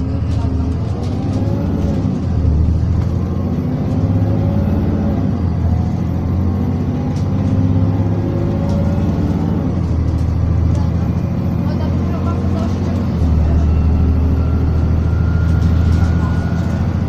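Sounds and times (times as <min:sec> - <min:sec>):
bus engine drone: 0:00.0 - 0:17.0.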